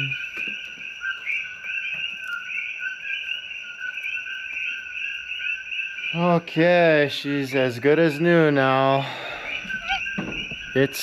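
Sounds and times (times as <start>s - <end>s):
small animals chirping chorus: 0.0s - 11.0s.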